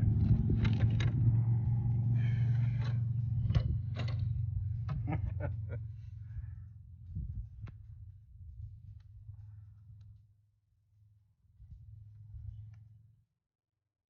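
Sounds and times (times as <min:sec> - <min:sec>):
sharp clicks and knocks: 0:00.0 - 0:05.3
vehicle engine humming: 0:00.0 - 0:09.7.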